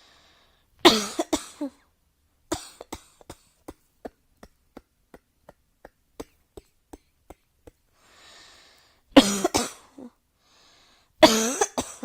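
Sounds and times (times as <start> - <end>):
person coughing: 0.8 - 1.8, 6.2 - 7.1, 9.2 - 10.2, 11.2 - 12.0.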